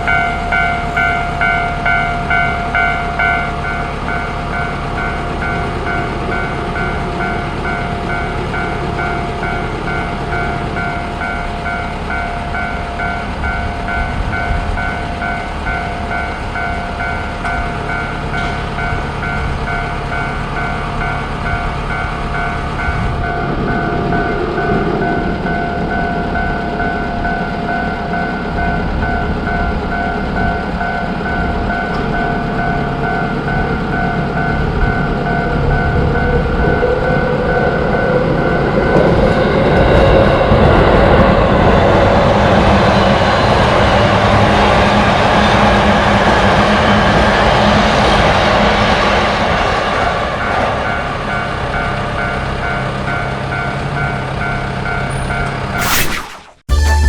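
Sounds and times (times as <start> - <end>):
level crossing alarm ringing: 0.0 - 40.0
train rumble: 0.0 - 55.8.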